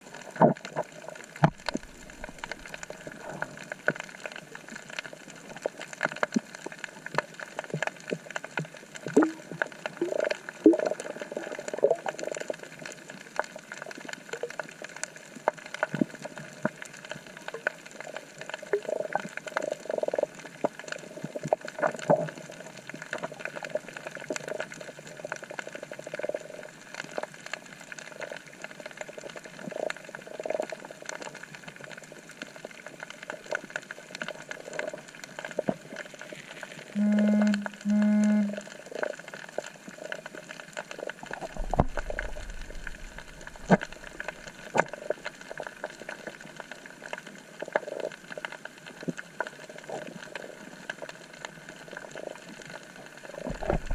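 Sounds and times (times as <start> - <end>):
crackle of sharp clicks underwater: 0.0 - 53.9
gurgling bubble bursts: 0.1 - 4.7, 8.9 - 13.0, 40.8 - 46.4, 53.2 - 53.9.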